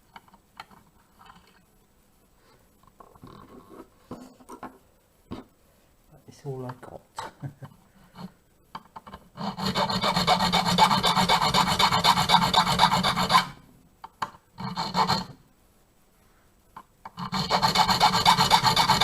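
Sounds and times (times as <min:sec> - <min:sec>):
hand file rasping on key blank: 0:09.4 - 0:13.6, 0:14.6 - 0:15.4, 0:17.2 - 0:19.0.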